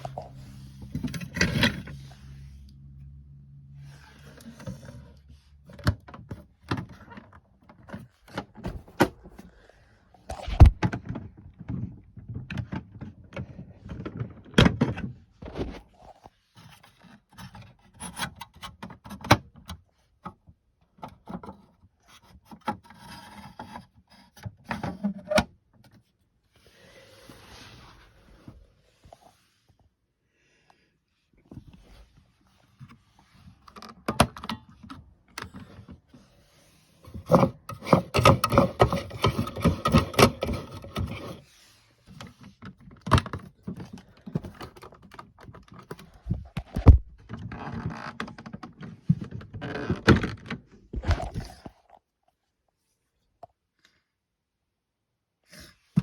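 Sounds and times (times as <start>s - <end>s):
plastic toy clicks and knocks: 37.2s - 41.3s.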